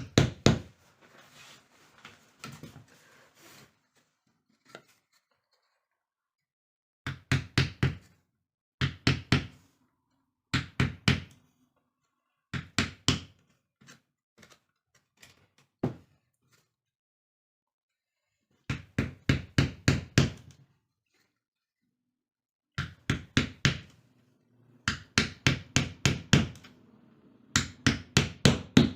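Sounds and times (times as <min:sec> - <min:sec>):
hammer tapping: 0:24.8 - 0:26.7.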